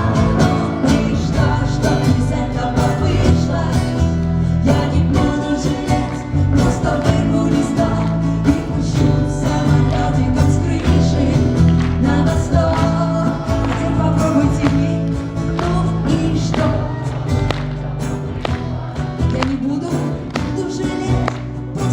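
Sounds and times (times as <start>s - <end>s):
woman singing: 0.0s - 17.3s
bass guitar: 0.0s - 21.9s
live pop band playing: 0.0s - 21.9s.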